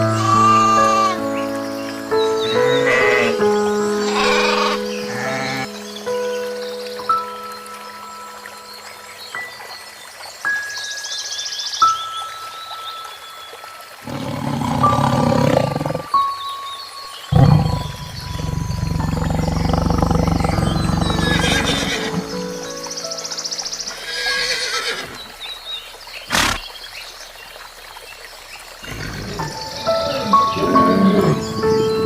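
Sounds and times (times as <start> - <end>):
animal calls: 0.0 - 1.2, 2.5 - 5.7, 17.3 - 22.5, 26.3 - 26.6
long low animal call: 0.0 - 1.2, 2.5 - 5.7, 14.0 - 16.2, 17.3 - 22.4
background music: 0.0 - 25.0, 28.8 - 32.0.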